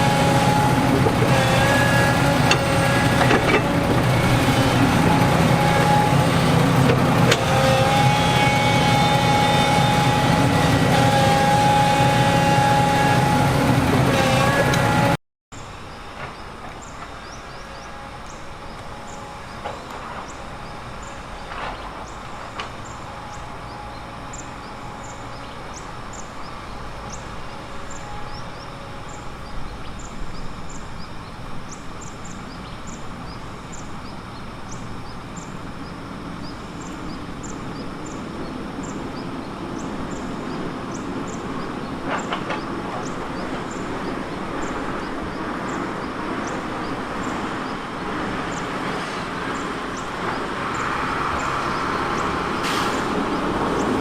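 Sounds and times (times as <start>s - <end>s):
diesel machinery rumble: 0.0s - 54.0s
metal clanks: 0.6s - 7.5s.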